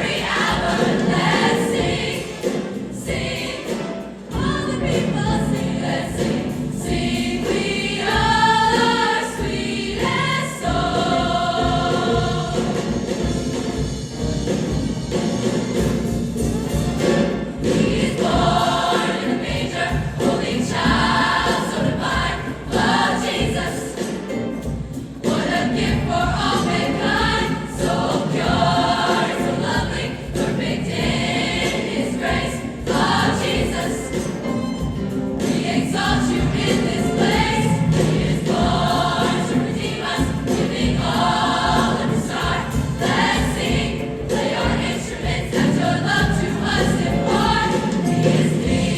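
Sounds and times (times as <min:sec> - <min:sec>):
choir singing: 0:00.0 - 0:13.9, 0:15.8 - 0:48.9
instrumental accompaniment: 0:00.0 - 0:48.9.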